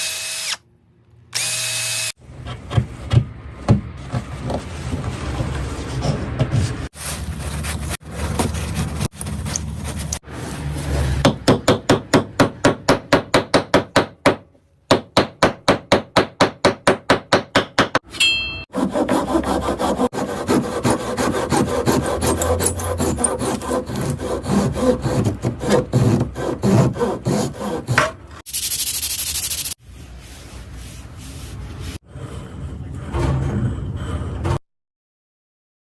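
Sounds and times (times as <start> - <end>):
hand tool scraping wood: 18.7 - 28.4.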